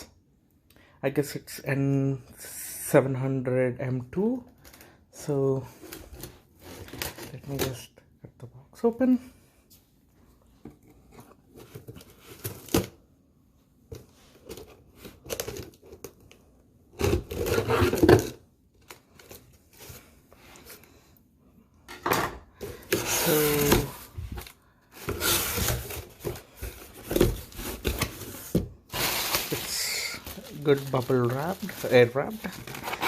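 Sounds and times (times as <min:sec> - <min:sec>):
plastic packing crinkling: 0:22.9 - 0:33.0.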